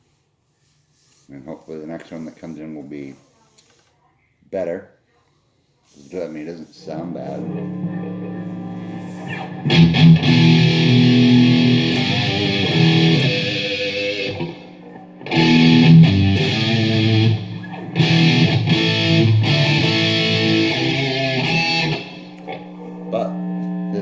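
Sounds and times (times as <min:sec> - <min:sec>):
electric guitar playing: 0:06.9 - 0:24.0.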